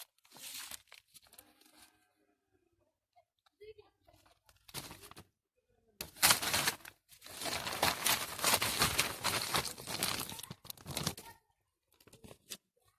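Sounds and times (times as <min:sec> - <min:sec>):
plastic bag crinkling: 0:06.0 - 0:11.4.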